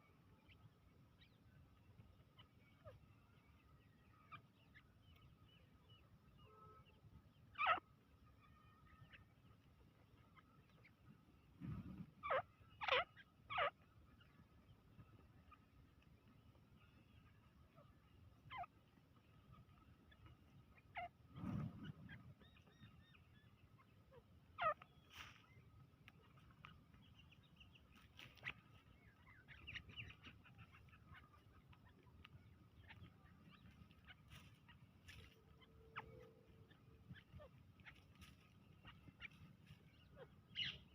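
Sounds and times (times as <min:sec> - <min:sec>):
francolin calling: 0:00.0 - 0:09.3, 0:12.2 - 0:13.9, 0:26.2 - 0:40.9
low background rumble: 0:00.0 - 0:40.9
partridge chirps: 0:00.0 - 0:40.9.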